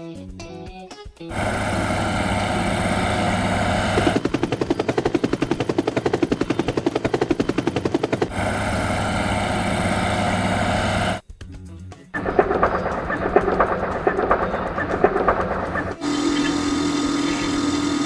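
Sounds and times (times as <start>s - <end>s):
cartoon machine engine hum: 1.3s - 11.2s, 12.2s - 18.0s
rapid hammering: 1.3s - 11.2s, 12.2s - 16.5s.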